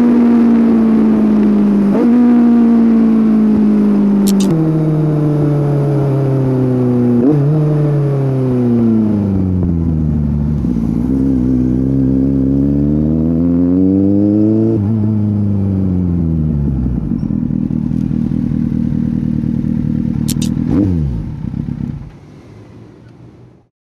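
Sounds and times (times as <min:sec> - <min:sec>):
motorcycle engine revving and idling: 0:00.0 - 0:23.1
engine rev blip: 0:04.2 - 0:04.6, 0:20.2 - 0:21.2.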